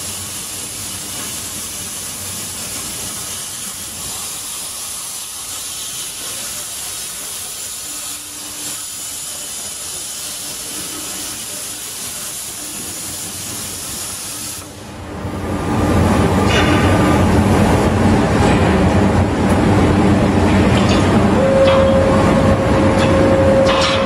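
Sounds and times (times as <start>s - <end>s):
cutting torch hissing: 0.0s - 14.8s.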